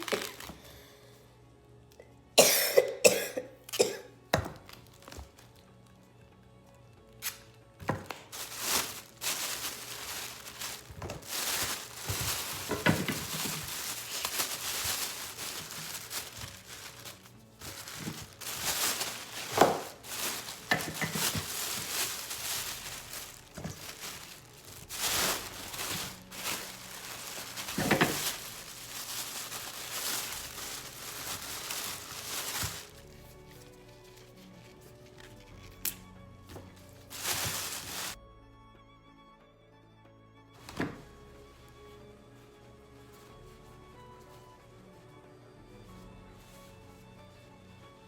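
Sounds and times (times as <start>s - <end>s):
plastic bags crinkling: 0.0s - 0.8s, 3.8s - 5.9s, 7.2s - 34.3s, 37.0s - 38.2s.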